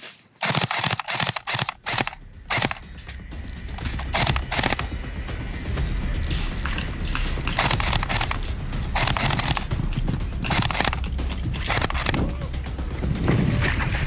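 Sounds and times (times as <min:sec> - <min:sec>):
camera handling noise: 0:00.0 - 0:02.8, 0:03.8 - 0:04.9, 0:07.5 - 0:08.4, 0:09.0 - 0:09.6, 0:10.4 - 0:12.2
wind rumble: 0:01.4 - 0:14.0.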